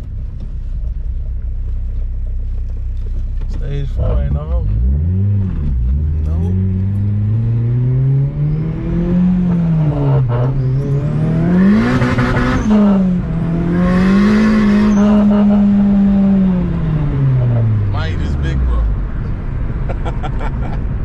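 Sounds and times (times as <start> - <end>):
car engine accelerating hard: 3.5 - 21.0
turbo and intake rush: 4.0 - 19.2.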